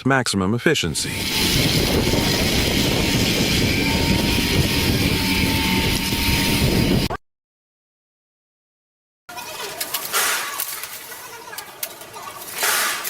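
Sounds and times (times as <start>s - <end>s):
tiller machine rumbling: 1.1s - 7.1s, 9.3s - 13.0s.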